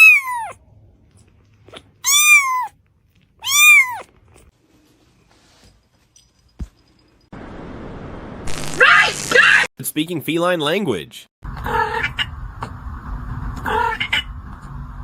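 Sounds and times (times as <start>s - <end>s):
cat meowing: 0.0s - 0.6s, 2.0s - 2.8s, 3.4s - 4.1s.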